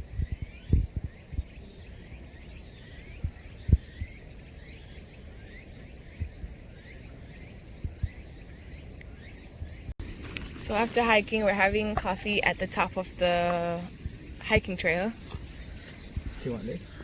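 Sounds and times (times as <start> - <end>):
low thumps on microphone: 0.0 - 1.6, 3.2 - 4.2, 11.0 - 16.4
pulsing high-pitched wildlife hiss: 0.0 - 17.0.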